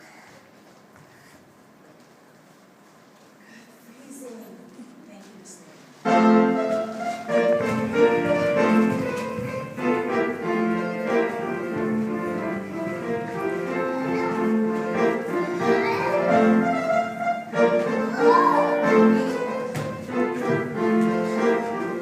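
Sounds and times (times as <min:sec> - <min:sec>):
classical piano and strings: 0:06.0 - 0:22.0.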